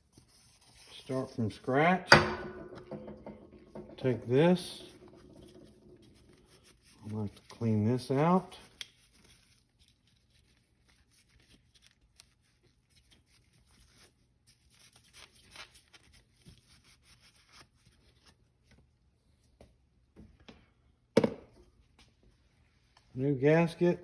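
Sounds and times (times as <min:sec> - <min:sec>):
faint rubbing and scraping: 0:00.0 - 0:08.7.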